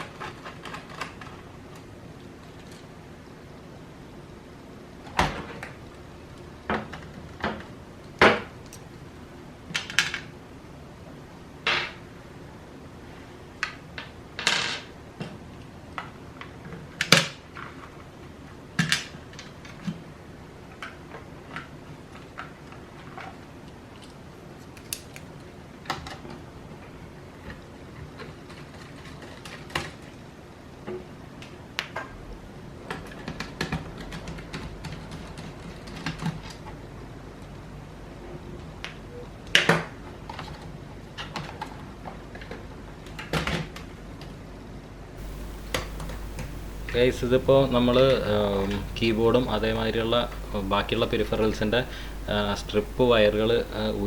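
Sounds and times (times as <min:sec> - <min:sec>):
small tools clicking on laptop: 0:45.2 - 0:48.2.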